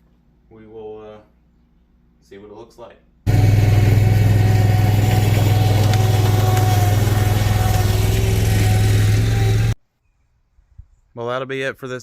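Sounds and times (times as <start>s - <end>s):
skid steer engine running: 3.3s - 9.8s.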